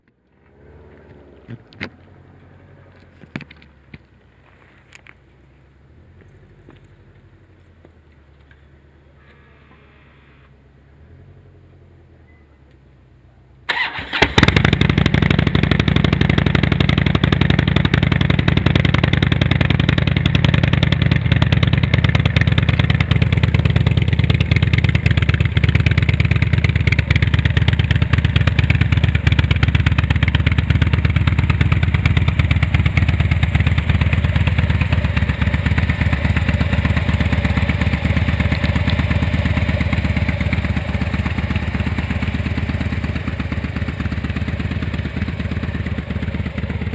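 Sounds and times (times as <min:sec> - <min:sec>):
motorcycle engine idling: 0:13.7 - 0:46.9
motorcycle engine starting: 0:13.7 - 0:46.9.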